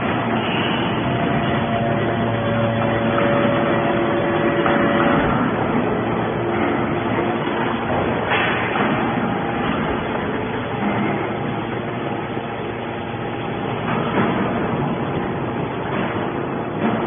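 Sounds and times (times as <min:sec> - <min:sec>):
scrap metal baler droning: 0:00.0 - 0:17.0.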